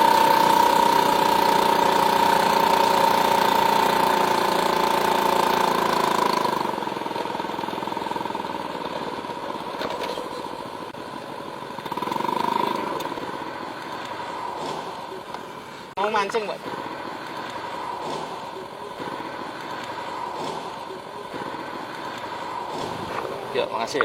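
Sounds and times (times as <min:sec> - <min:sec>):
small engine droning: 0:00.0 - 0:15.9.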